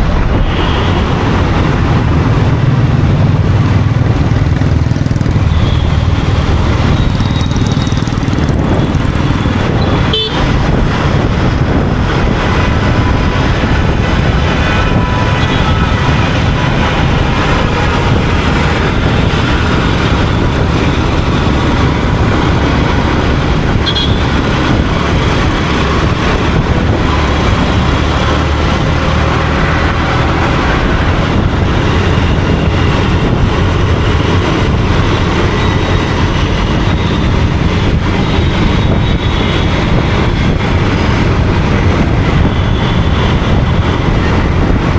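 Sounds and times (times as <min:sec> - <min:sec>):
traffic vehicles: 0:00.0 - 0:44.9
motorcycle engine running: 0:00.6 - 0:44.9
vehicle horns: 0:05.4 - 0:08.1, 0:08.7 - 0:11.2, 0:12.4 - 0:20.2, 0:23.7 - 0:25.8, 0:35.4 - 0:40.5.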